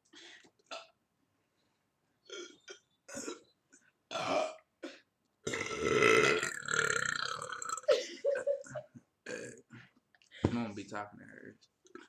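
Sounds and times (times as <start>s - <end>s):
person burping: 2.3s - 3.4s, 4.1s - 4.7s, 5.4s - 8.0s, 9.2s - 9.7s.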